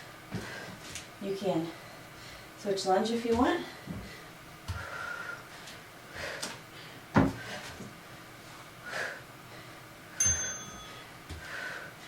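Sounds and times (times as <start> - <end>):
feet thudding on workout box: 7.1 - 7.9.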